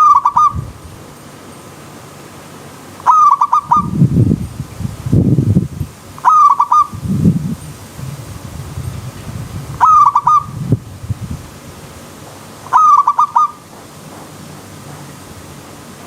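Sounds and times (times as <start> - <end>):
dove cooing: 0.0 - 0.6, 3.0 - 4.1, 6.2 - 7.0, 9.8 - 10.6, 12.7 - 13.6.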